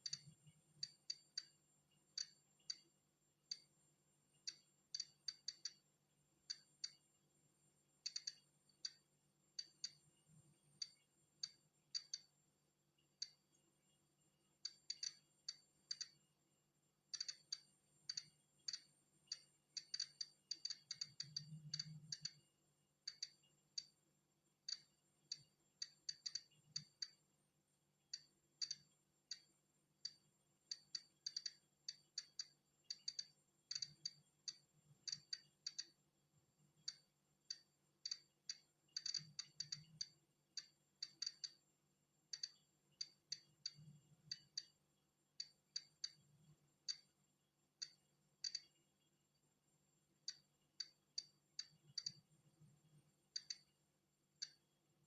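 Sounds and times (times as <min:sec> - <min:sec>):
geiger counter clicking: 0:00.0 - 0:01.6, 0:02.2 - 0:02.9, 0:04.4 - 0:05.9, 0:06.5 - 0:07.0, 0:08.0 - 0:12.4, 0:13.1 - 0:13.5, 0:14.6 - 0:16.3, 0:17.1 - 0:24.0, 0:24.6 - 0:27.2, 0:28.1 - 0:36.0, 0:36.8 - 0:41.6, 0:42.3 - 0:44.8, 0:45.4 - 0:47.2, 0:47.8 - 0:48.8, 0:50.2 - 0:52.3, 0:53.3 - 0:53.8, 0:54.4 - 0:54.6.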